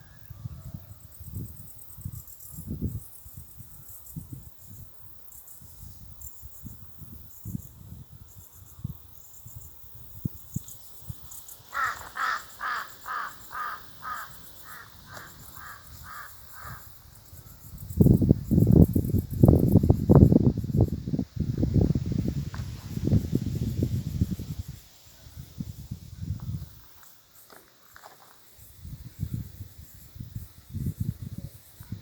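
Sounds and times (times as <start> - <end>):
insect chorus: 0.0 - 32.0
bird calling: 11.7 - 16.9.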